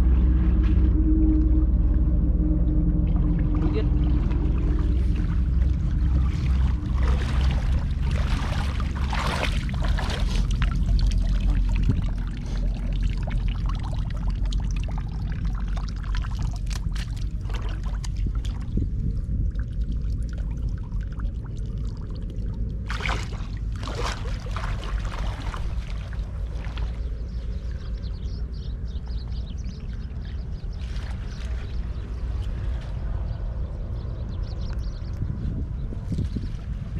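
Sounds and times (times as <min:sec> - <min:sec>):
steady low rumble: 0:00.0 - 0:36.9
water pouring and splashing: 0:03.1 - 0:27.2.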